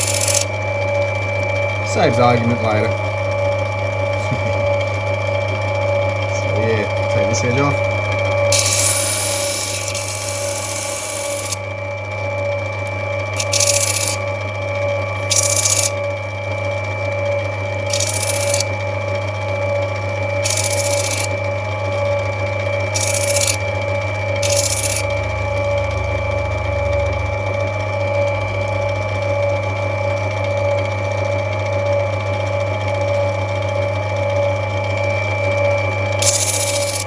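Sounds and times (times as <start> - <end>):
stone hissing on grinding wheel: 0.0 - 0.5, 8.5 - 11.6, 13.4 - 14.2, 15.2 - 16.0, 17.9 - 18.7, 20.4 - 21.3, 22.9 - 23.6, 24.4 - 25.1, 36.2 - 37.0
grinding machine motor hum: 0.0 - 37.0.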